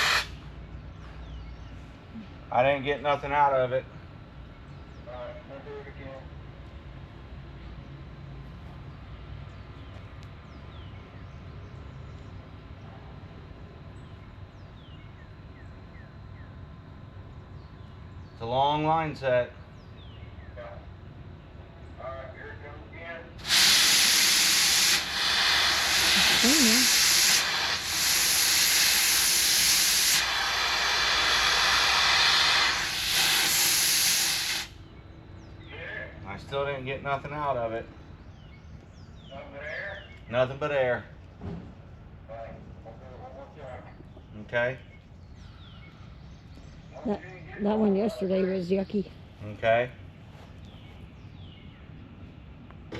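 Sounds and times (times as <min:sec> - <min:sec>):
gas hissing from open line: 0:00.0 - 0:00.6, 0:23.4 - 0:35.1
background hum and hiss: 0:00.0 - 0:52.9
bird chirping: 0:13.9 - 0:16.6, 0:19.5 - 0:20.7, 0:37.8 - 0:40.6, 0:41.9 - 0:49.4, 0:50.6 - 0:52.9.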